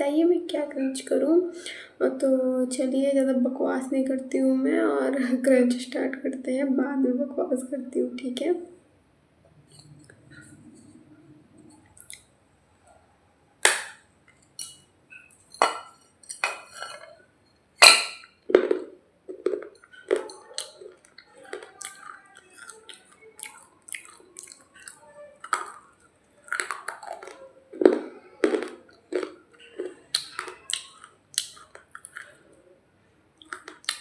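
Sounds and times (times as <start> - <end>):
hard clay cracking: 13.6 - 14.0
crunchy chewing: 17.8 - 32.6, 33.4 - 34.0.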